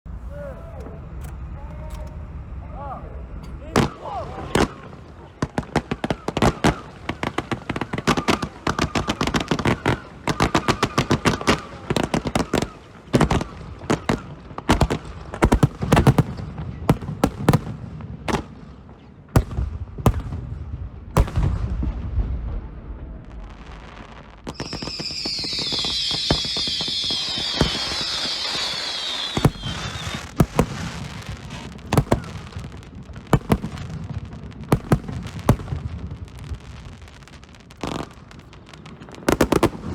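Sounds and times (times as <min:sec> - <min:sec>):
firework shells banging: 0:25.4 - 0:39.9.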